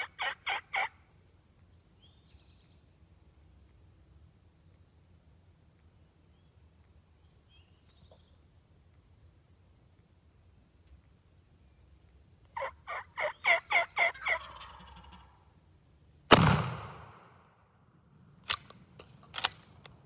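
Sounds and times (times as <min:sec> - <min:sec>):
wild turkey gobbling: 0:00.0 - 0:01.0, 0:12.6 - 0:15.4
gunshot echoing: 0:16.3 - 0:17.4.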